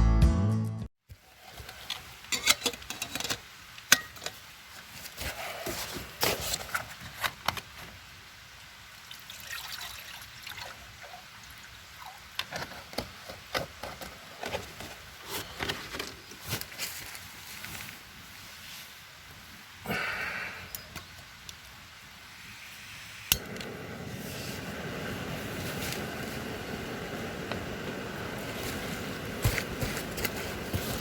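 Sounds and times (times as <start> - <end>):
footsteps through wet undergrowth: 28.4 - 31.0.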